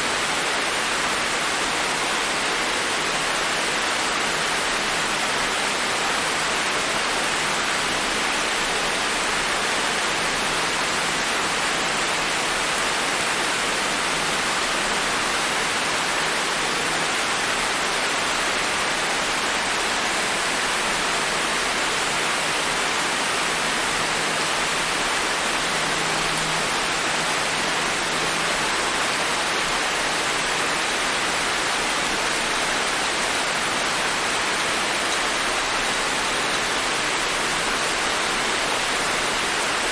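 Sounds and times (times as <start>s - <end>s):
steady rain falling: 0.0s - 39.9s.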